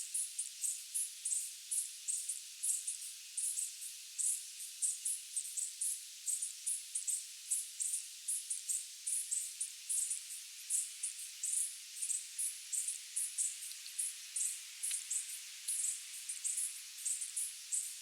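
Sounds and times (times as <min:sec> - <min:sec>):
constant high hiss: 0:00.0 - 0:18.0
night insects chirping: 0:11.1 - 0:18.0.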